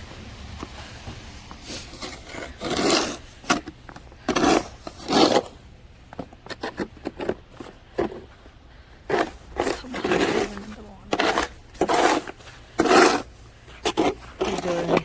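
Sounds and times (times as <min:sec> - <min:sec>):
snow scraping: 0:00.0 - 0:05.7, 0:09.0 - 0:15.0.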